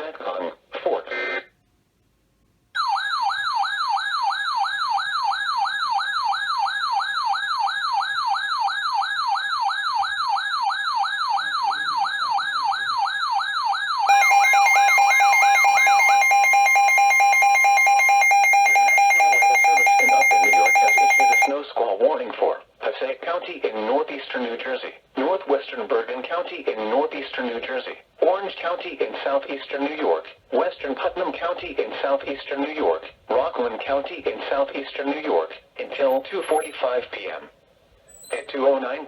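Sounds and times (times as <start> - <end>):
warbling electronic siren tone: 14.1 - 21.5.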